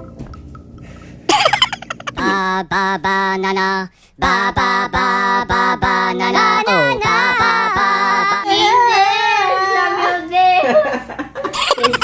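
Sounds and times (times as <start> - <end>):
person singing repeated syllables: 2.2 - 8.7.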